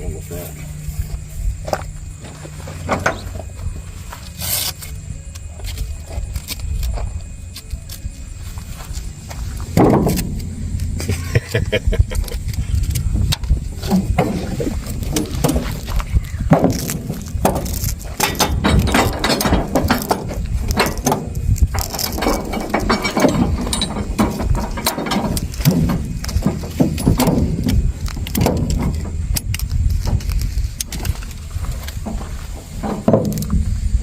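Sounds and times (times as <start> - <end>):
steady low rumble: 0.0 - 34.0
metallic clinks and clanks: 8.9 - 33.6.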